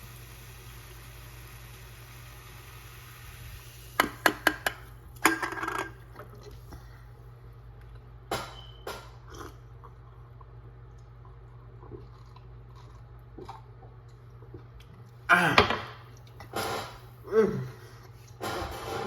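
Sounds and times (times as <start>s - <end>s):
person sipping and swallowing: 9.2s - 16.4s.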